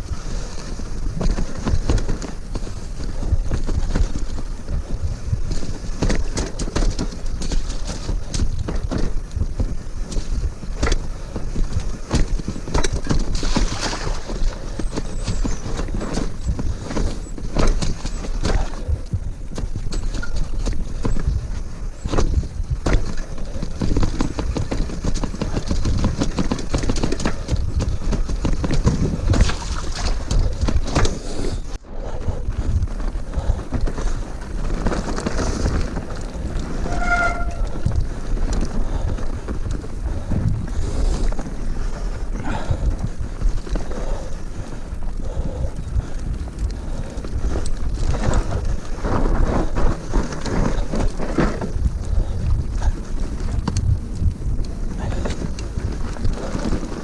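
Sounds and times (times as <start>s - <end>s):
bike rattling over bumps: 0.0s - 57.0s
bike tyre noise on dirt: 0.0s - 57.0s
wind buffeting microphone: 0.0s - 57.0s
high squeak: 36.8s - 37.8s.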